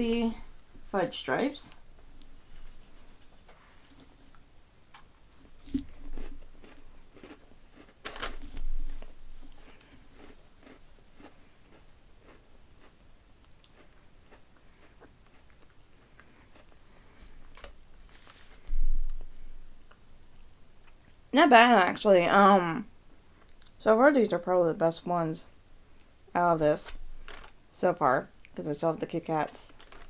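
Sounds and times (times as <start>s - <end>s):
chewing with small crunches: 2.1s - 21.2s, 23.1s - 23.8s
crunchy cookie bites: 5.0s - 16.9s.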